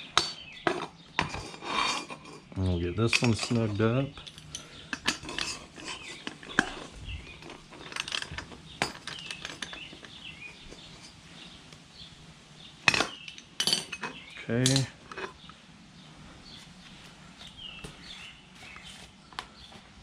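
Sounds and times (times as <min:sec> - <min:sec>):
wrench clinking on bolt: 0:03.1 - 0:11.2.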